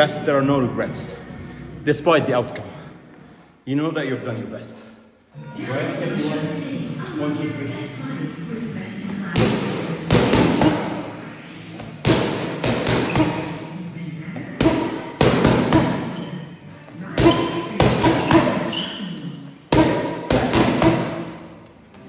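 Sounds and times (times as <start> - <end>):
boxing punches thudding: 9.4 - 13.8, 14.4 - 16.2, 17.2 - 18.7, 19.7 - 21.5.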